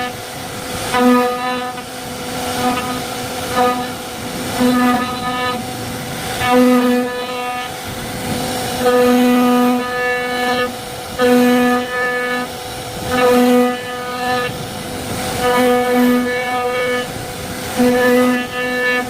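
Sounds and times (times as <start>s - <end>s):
carving machine motor whine: 0.0s - 19.0s.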